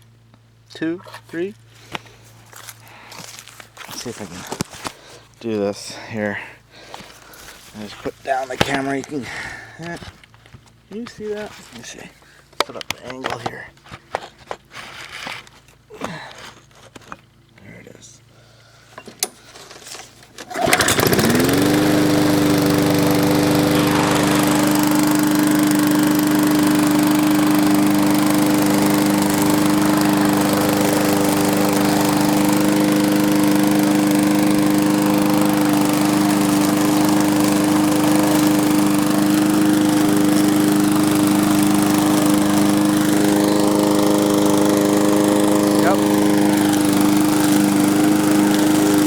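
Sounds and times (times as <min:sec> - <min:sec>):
lawn mower engine running: 0:20.4 - 0:49.0.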